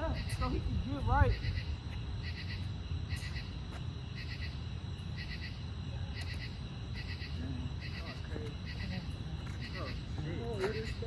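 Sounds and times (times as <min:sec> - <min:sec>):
wind rumble on microphone: 0:00.0 - 0:06.0.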